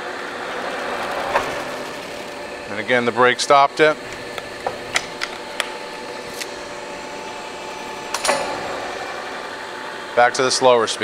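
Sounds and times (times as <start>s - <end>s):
machine hum: 0.0s - 11.0s
lever clicks: 4.0s - 9.6s
metallic clunk: 4.0s - 9.6s.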